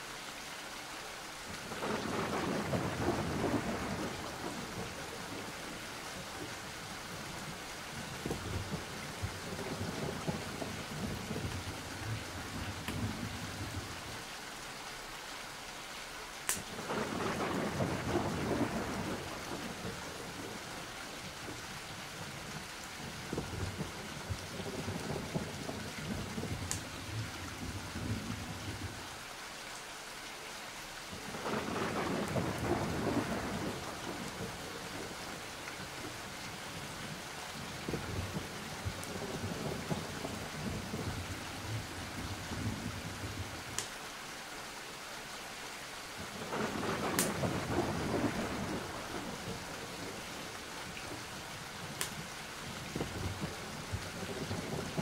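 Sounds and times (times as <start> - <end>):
rain falling steadily: 0.0 - 55.0
thunder rumbling: 1.7 - 5.8, 7.1 - 14.0, 16.7 - 20.8, 22.2 - 29.0, 31.1 - 43.7, 46.3 - 51.4, 52.6 - 55.0.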